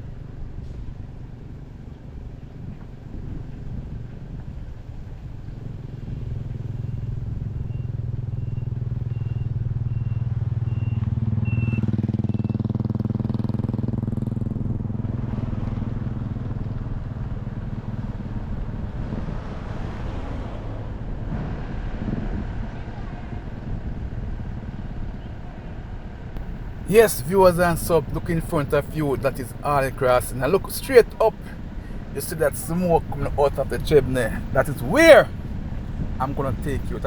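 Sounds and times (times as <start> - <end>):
road noise: 26.4 - 37.0.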